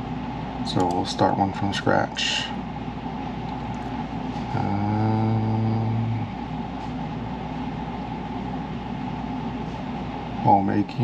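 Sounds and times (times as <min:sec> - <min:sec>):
background hum and hiss: 0:00.0 - 0:11.0
man humming: 0:04.4 - 0:06.4.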